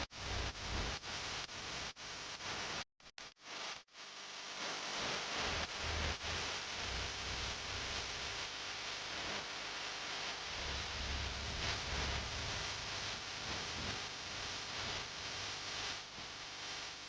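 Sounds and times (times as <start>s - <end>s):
steady hiss of noise: 3.4s - 17.0s.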